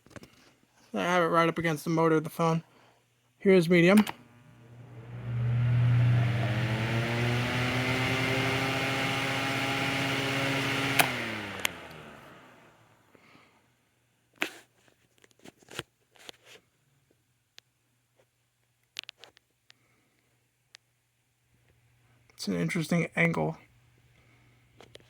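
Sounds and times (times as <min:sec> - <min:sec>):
fan motor humming and whining: 0:04.0 - 0:13.0
fan switch click: 0:10.9 - 0:11.9.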